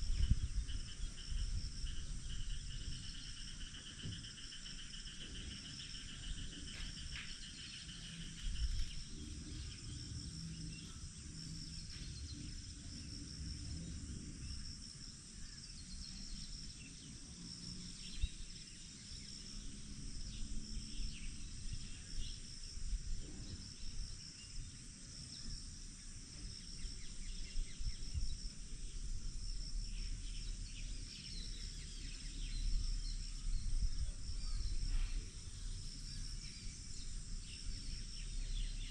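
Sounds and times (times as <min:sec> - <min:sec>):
insects chirping and trilling: 0:00.0 - 0:38.9
low uneven rumble: 0:16.2 - 0:38.9.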